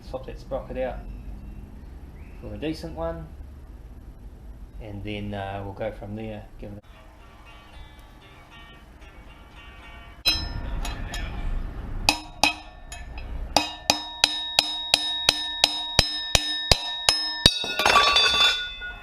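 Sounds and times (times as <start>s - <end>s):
hammer striking metal punch: 10.3s - 11.0s, 12.1s - 19.0s
rattling clatter: 16.8s - 19.0s.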